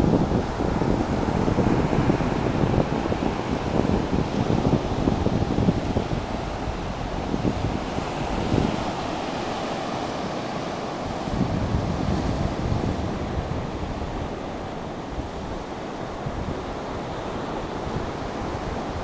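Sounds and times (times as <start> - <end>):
ocean surf washing ashore: 0.0 - 19.0
wind buffeting microphone: 0.0 - 19.0.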